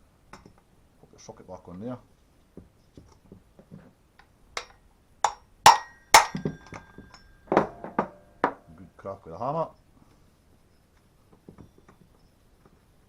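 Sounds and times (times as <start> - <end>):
hammer striking metal socket: 4.6 - 7.3.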